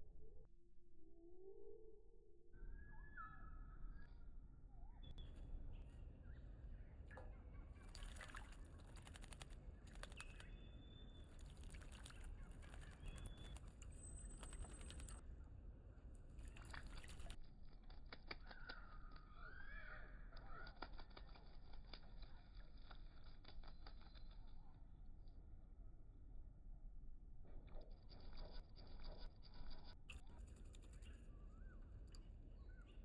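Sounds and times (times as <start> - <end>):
birds splashing: 7.6 - 15.2, 16.3 - 17.4.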